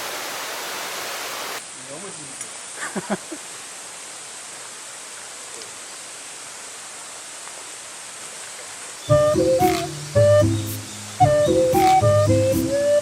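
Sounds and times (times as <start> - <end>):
stream water rushing: 0.0 - 13.0.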